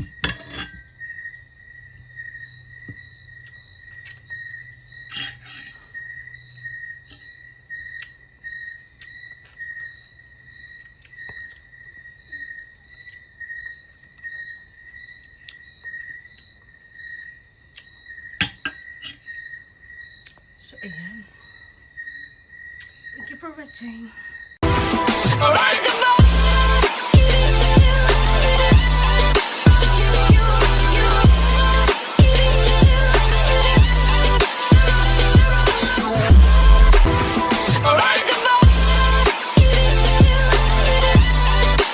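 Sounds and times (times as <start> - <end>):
cricket chirping: 0.0 - 24.8.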